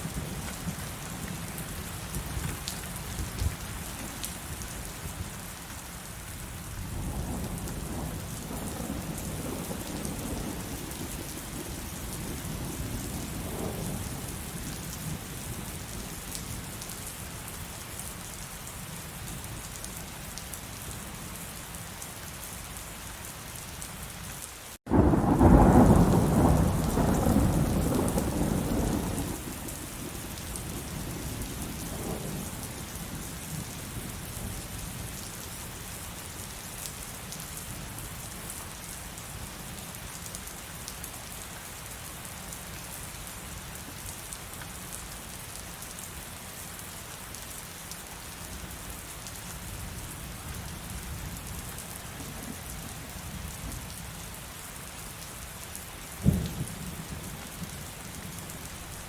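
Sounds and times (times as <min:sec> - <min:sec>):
heavy rain falling: 0:00.0 - 0:59.0
loud thunderclap: 0:24.9 - 0:29.4
thunder rumbling: 0:24.9 - 0:32.7.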